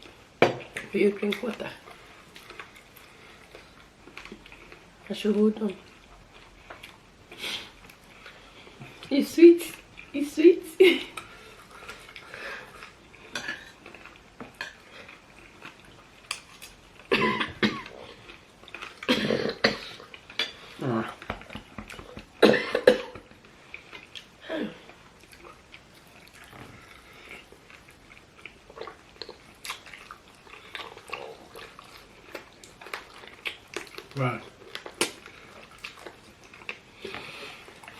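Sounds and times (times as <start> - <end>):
woman coughing: 17.1 - 17.9, 19.1 - 19.9, 22.4 - 23.2.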